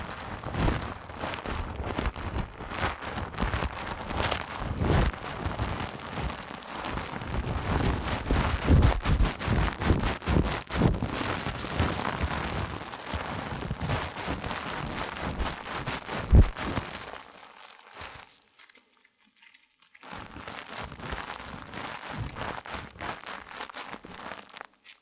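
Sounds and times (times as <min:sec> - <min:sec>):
wet hair scrubbing: 0:00.2 - 0:18.4
soft bumps on microphone: 0:15.4 - 0:16.8.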